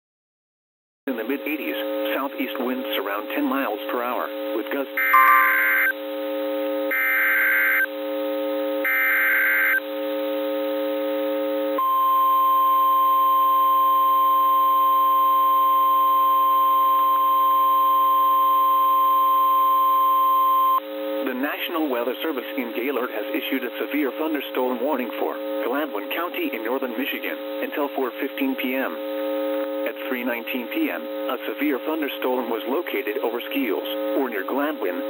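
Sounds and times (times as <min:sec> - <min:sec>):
digital data tone bursts: 0:05.0 - 0:06.0, 0:06.9 - 0:07.9, 0:08.8 - 0:09.8
steady warning alarm tone: 0:05.0 - 0:06.0, 0:06.8 - 0:09.8.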